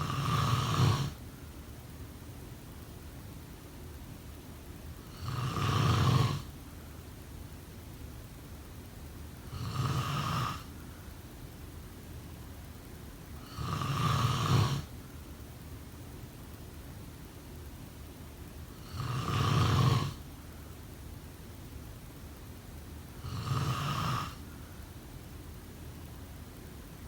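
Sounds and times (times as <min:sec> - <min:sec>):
person snoring: 0:00.0 - 0:01.2, 0:05.1 - 0:06.5, 0:09.5 - 0:10.7, 0:13.4 - 0:14.9, 0:18.8 - 0:20.2, 0:23.2 - 0:24.4
faint steady hiss: 0:00.0 - 0:27.0.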